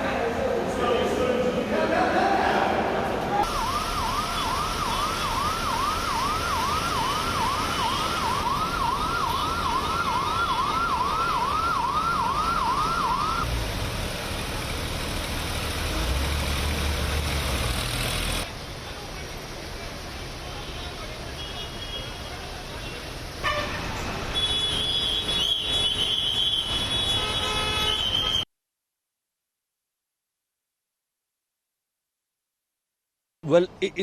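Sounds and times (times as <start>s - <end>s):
siren yelping: 3.4s - 13.5s.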